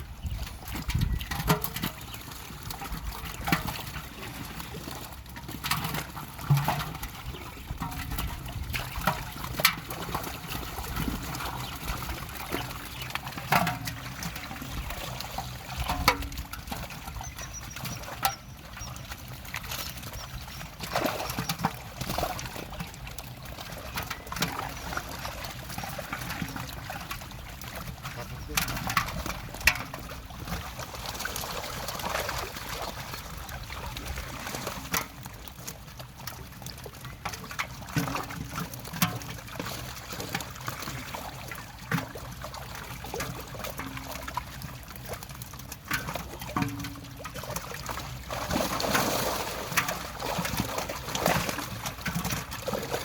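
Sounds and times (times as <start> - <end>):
pond water trickling: 0.0 - 53.0
sharp water splashes: 0.0 - 53.0.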